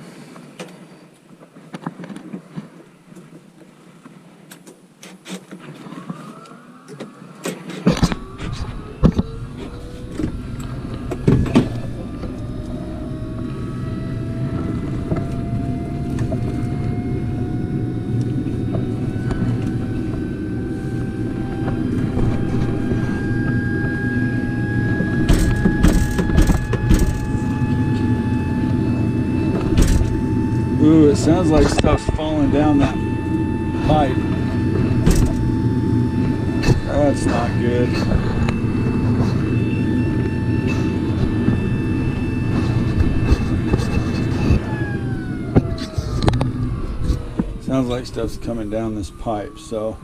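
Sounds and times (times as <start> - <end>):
furnace motor rumble and whine: 6.3 - 50.0
knocks and clicks: 25.0 - 27.5, 29.6 - 30.2, 35.0 - 35.5.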